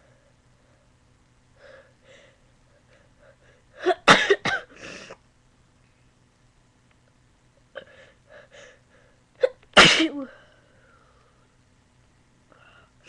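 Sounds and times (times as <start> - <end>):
person sneezing: 9.4 - 10.4.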